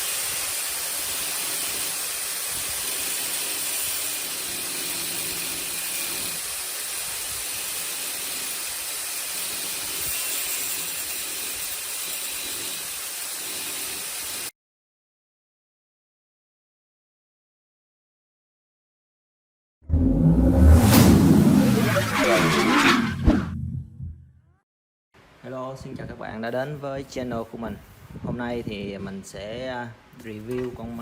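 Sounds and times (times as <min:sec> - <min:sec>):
angle grinder running: 0:00.9 - 0:14.5.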